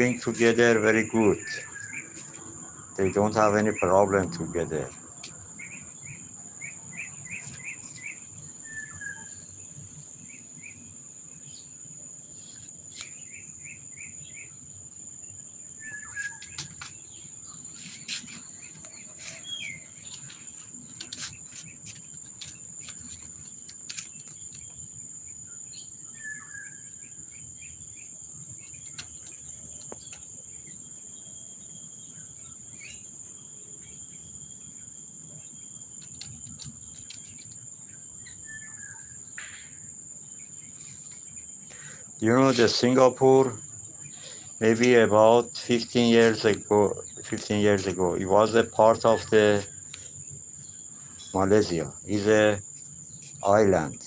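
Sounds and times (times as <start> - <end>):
birds chirping: 0.0 - 54.0
insects droning: 0.0 - 54.0
faint clicks: 49.9 - 50.1.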